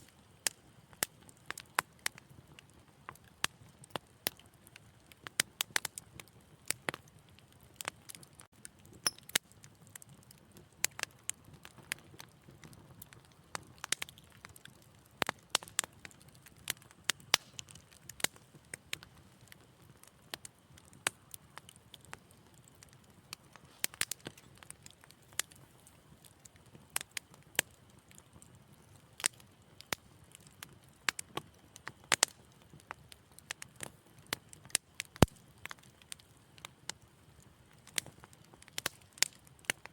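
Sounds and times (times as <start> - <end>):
low rumble of flames: 0.0 - 39.9
wood fire crackling: 0.0 - 39.9.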